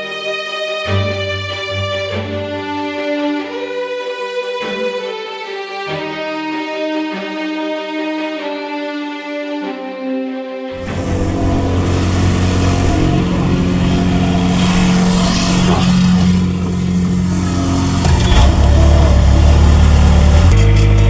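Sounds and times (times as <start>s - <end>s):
machine engine running: 10.8s - 21.0s.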